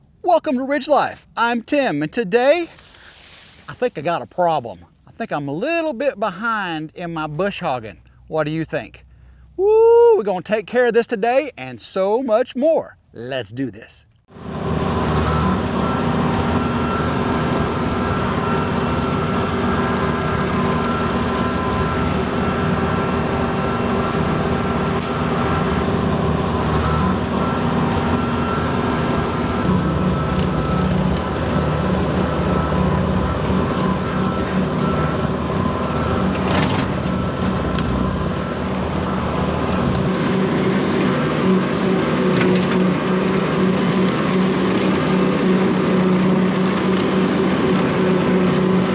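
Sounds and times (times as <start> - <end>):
rotary cutter cutting grass: 14.3 - 40.1
tractor engine running: 14.3 - 40.1.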